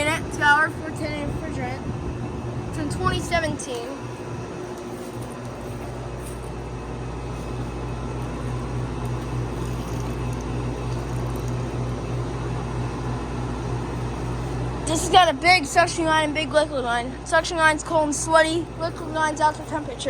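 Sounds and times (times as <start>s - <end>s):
compressor humming: 0.0s - 20.0s
condenser fans rushing: 0.0s - 20.0s.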